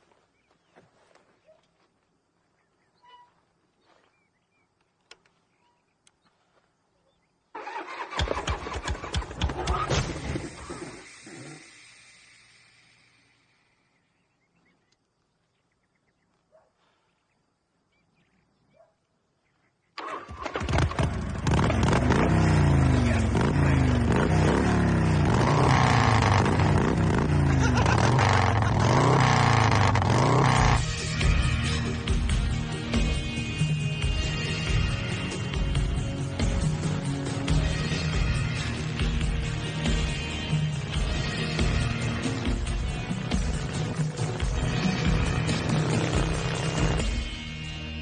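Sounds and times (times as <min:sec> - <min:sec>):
faint chirps: 0:00.2 - 0:07.5, 0:10.4 - 0:20.0
motorcycle engine running: 0:20.0 - 0:48.0.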